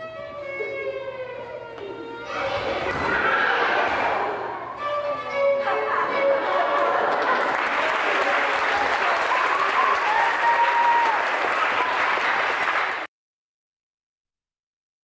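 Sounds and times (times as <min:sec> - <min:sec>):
audience applauding: 0:06.5 - 0:13.1.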